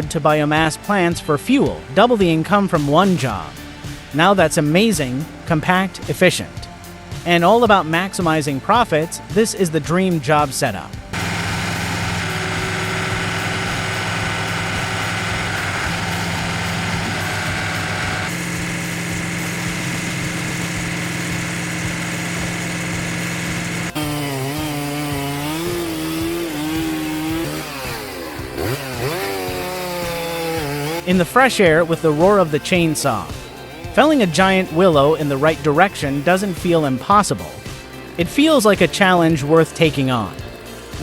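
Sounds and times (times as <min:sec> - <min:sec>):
chainsaw engine revving: 0:00.0 - 0:41.0.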